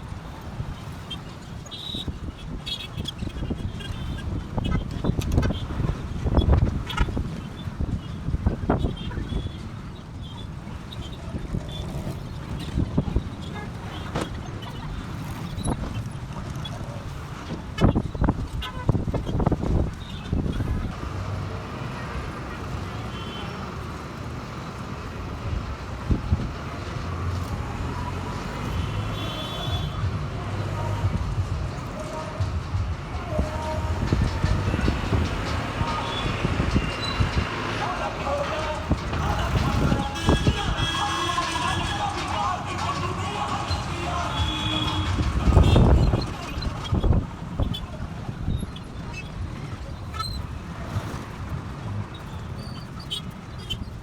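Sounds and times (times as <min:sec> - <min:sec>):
wind buffeting microphone: 0:00.0 - 0:21.7, 0:25.0 - 0:54.0
passing vehicles: 0:00.0 - 0:54.0.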